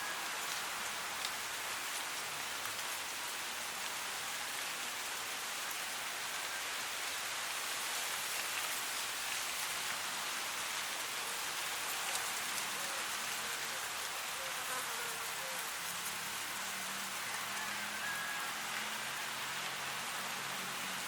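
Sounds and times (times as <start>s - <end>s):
wind rustling dry grass: 0.0s - 14.4s.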